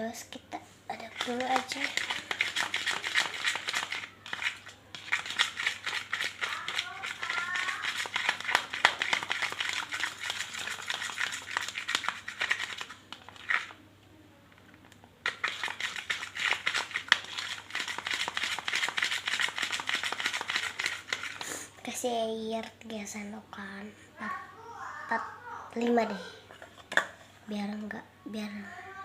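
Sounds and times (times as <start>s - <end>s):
spatula stirring sticky slime: 0.1s - 13.8s, 15.2s - 23.2s.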